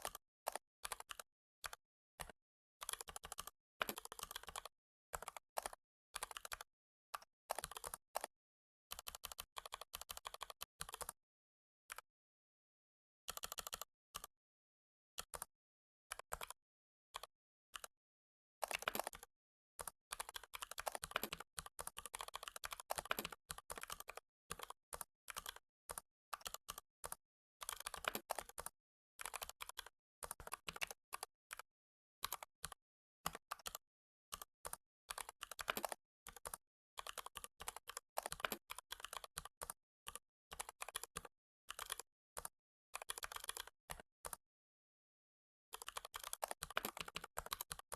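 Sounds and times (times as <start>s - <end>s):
keyboard typing: 3.9s - 4.7s, 18.6s - 19.3s, 20.2s - 26.8s, 27.6s - 31.3s, 33.3s - 39.7s, 45.7s - 47.9s.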